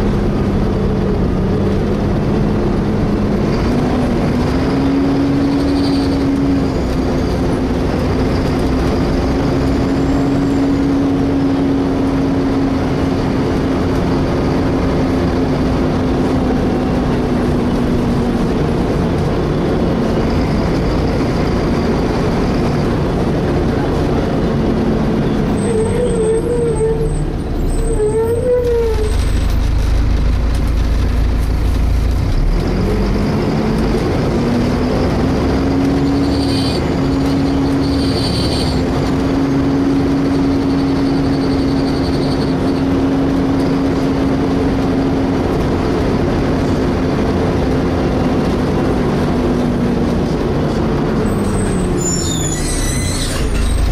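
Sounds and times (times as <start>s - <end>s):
bus engine whine and rumble: 0.0s - 53.9s
short wavering squeal: 25.5s - 29.3s, 51.4s - 53.9s.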